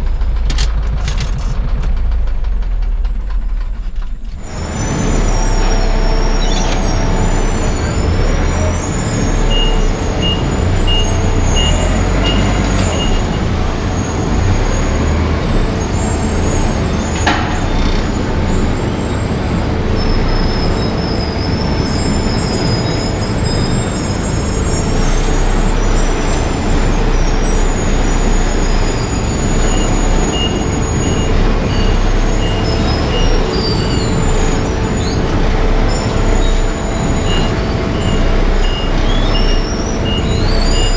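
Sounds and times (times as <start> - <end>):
tractor diesel engine running: 0.0 - 40.9
thin high squeals: 4.5 - 14.9.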